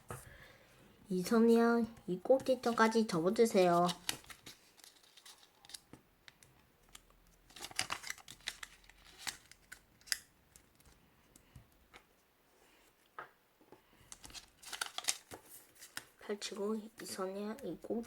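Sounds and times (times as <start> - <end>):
paper rustling and crinkling: 2.6 - 6.0, 7.5 - 11.0, 14.1 - 18.0.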